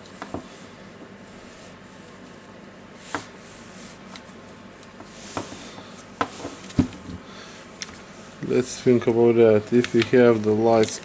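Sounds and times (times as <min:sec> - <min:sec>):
light clicks and knocks of parts: 0:09.7 - 0:11.0.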